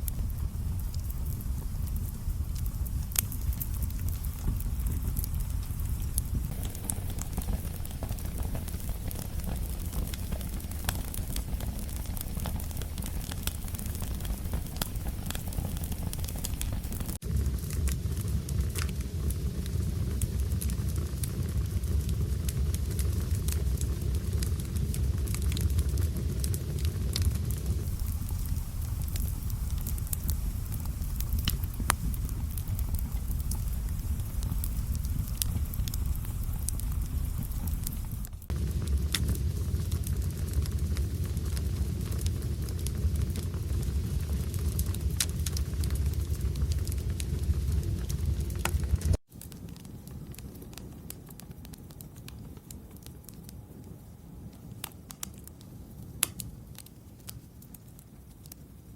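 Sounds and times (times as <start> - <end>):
fire rumbling: 0.0 - 58.6
fire crackling and popping: 0.0 - 58.9.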